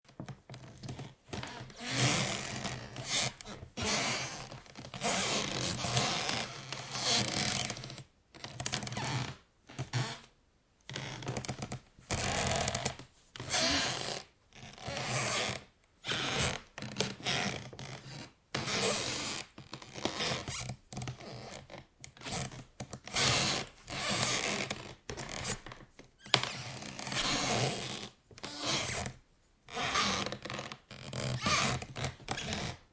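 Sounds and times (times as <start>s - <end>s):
wooden floorboards creaking: 0.1s - 10.3s, 29.8s - 32.8s.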